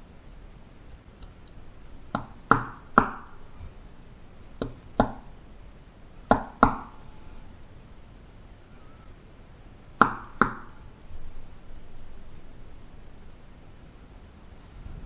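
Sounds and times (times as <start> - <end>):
sharp knocks on hard surface: 2.2 - 3.3, 10.0 - 10.7.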